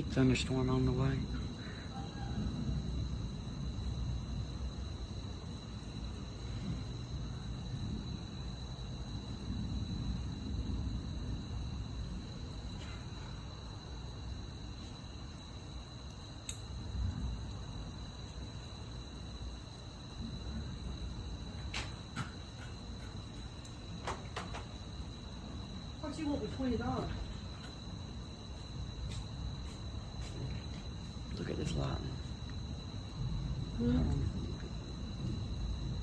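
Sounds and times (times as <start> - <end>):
low uneven rumble: 0.0 - 15.3, 24.6 - 36.0
crickets trilling: 0.0 - 36.0.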